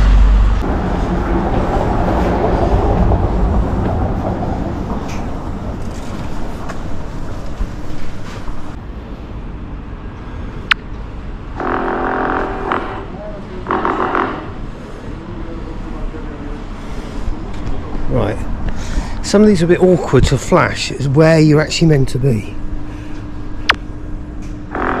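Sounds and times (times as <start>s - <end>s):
vehicle passing: 0.0s - 8.8s
street traffic: 0.0s - 25.0s.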